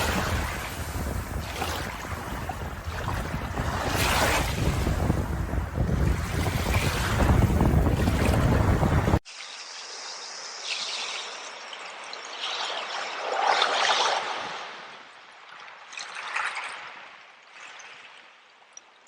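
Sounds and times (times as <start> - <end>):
wind-blown surf: 0.0 - 9.2
water trickling in a stream: 9.2 - 19.0.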